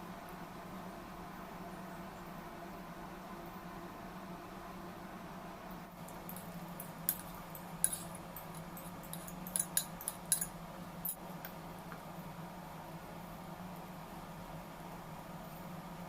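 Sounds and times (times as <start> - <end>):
faint steady hum: 0.0 - 16.0
light clicks and clinks: 6.0 - 11.2.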